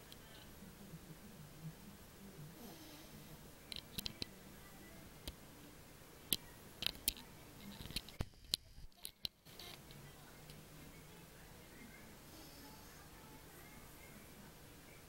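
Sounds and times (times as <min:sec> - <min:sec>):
puppy snoring: 0:02.5 - 0:03.4, 0:12.3 - 0:13.3.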